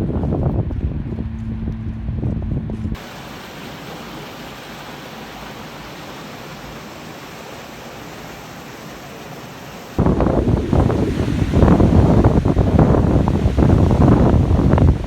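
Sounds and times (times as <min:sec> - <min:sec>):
low rumble with hum: 0:00.0 - 0:03.2, 0:10.0 - 0:15.0
waterfall rushing: 0:03.0 - 0:15.0.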